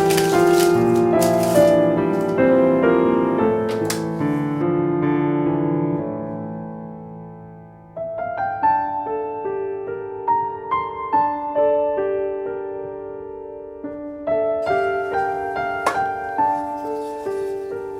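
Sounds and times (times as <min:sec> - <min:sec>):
slow piano music: 0:00.0 - 0:17.9.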